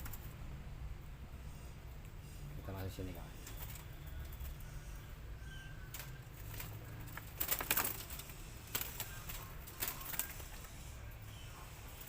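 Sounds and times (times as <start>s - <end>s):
clicking and clattering bursts: 5.9s - 10.8s.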